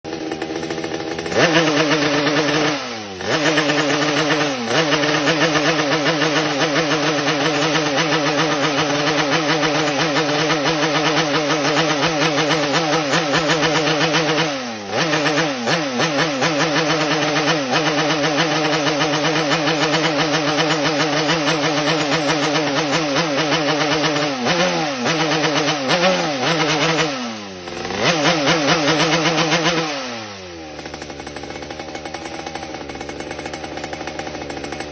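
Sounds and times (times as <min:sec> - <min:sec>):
two-stroke motorcycle engine revving: 0:00.0 - 0:34.9.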